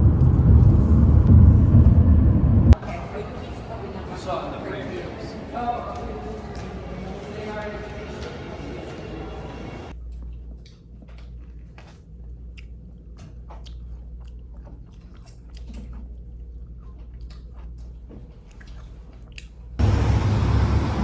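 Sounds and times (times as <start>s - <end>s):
steady low hum: 0.0s - 15.1s
person chewing crunchy food: 10.1s - 19.8s.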